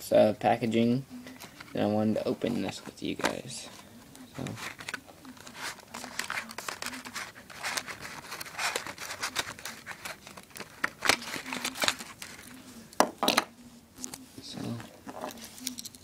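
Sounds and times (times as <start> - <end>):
wrapping crinkling and tearing: 4.5 - 12.7.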